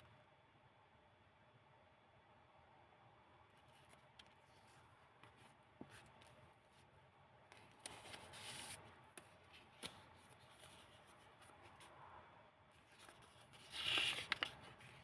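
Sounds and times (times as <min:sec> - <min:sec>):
paper pages rustling: 0:03.6 - 0:06.9, 0:07.5 - 0:11.9, 0:12.8 - 0:15.0.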